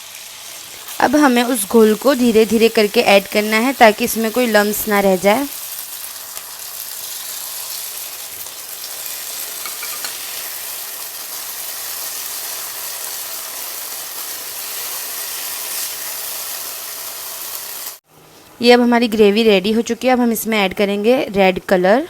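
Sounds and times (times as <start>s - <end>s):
gravy sizzling in a pan: 0.0s - 18.1s.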